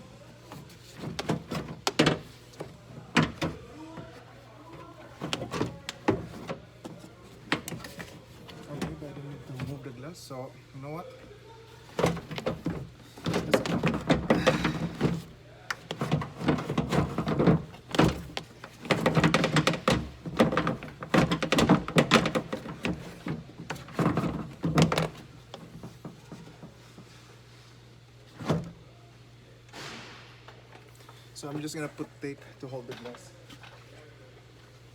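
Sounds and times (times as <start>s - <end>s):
knocks and rattles in car door: 11.9s - 26.8s.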